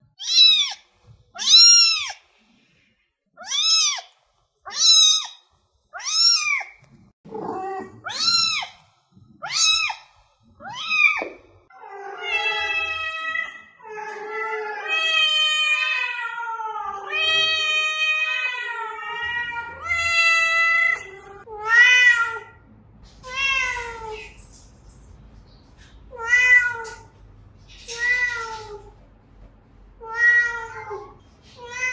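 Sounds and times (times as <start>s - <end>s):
cat meowing: 3.4s - 4.1s, 4.7s - 5.4s, 6.0s - 8.7s, 9.4s - 10.0s, 10.6s - 22.6s, 23.2s - 24.4s, 26.1s - 27.1s, 27.7s - 29.0s, 30.0s - 31.9s.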